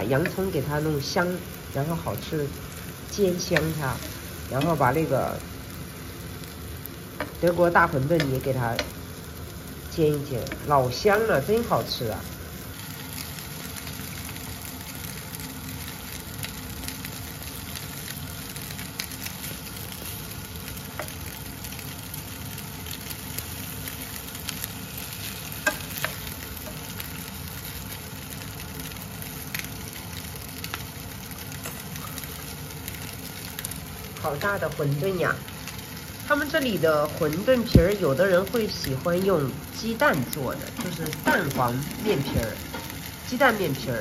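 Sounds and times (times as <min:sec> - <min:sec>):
food sizzling in a pan: 0:00.0 - 0:44.0.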